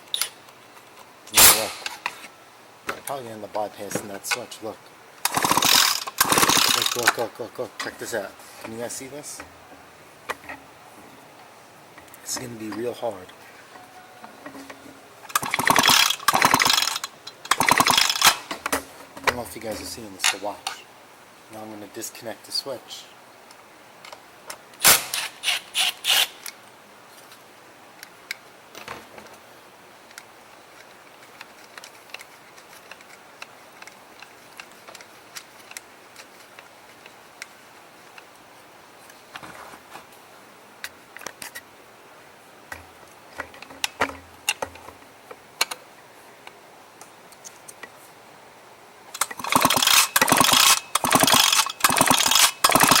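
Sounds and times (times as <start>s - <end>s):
clicking and rattling: 5.2s - 7.2s, 14.6s - 19.4s, 49.2s - 53.0s
recoil starter pulls with ratchet clatter: 5.2s - 7.2s, 15.3s - 18.7s, 49.2s - 53.0s
small handling clicks: 30.0s - 38.4s, 42.7s - 45.8s, 49.1s - 53.0s.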